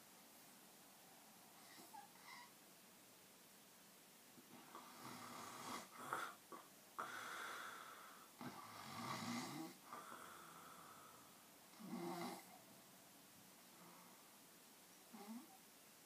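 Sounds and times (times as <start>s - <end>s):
person snoring: 7.0s - 11.2s, 11.8s - 12.6s.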